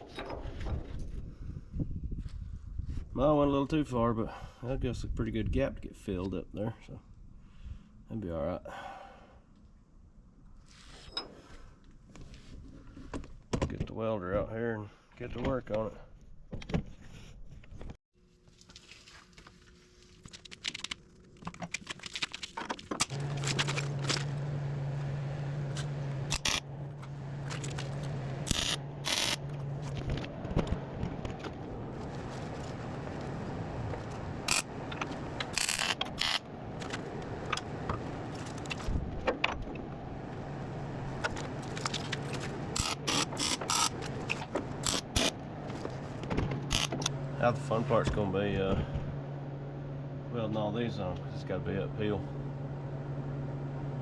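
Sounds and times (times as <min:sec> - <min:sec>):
welder electrical hum: 0:23.0 - 0:54.0.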